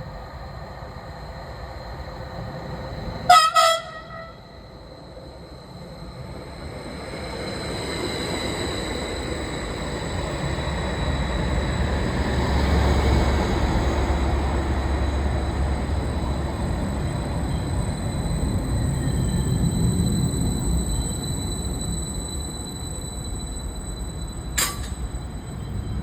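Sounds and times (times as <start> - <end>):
train rumbling past: 0.0 - 26.0.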